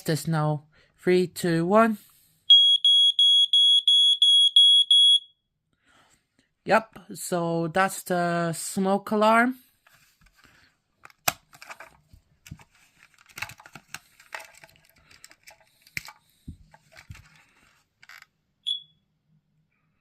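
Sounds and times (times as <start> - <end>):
smoke alarm beep: 2.5 - 5.4, 18.6 - 19.0
handling clicks and rustles: 11.0 - 18.3.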